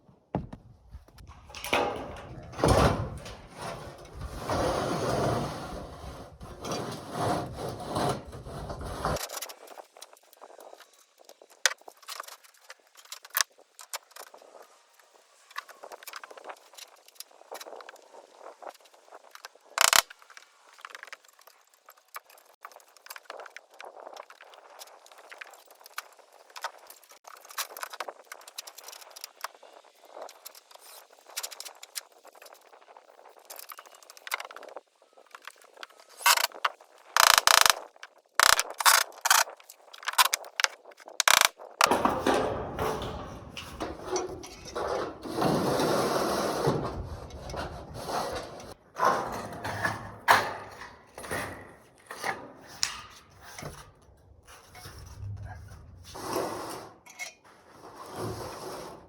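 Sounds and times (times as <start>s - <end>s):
sharp clicks and ratcheting: 19.8s - 20.1s, 36.2s - 36.6s, 37.2s - 37.8s, 38.4s - 42.0s.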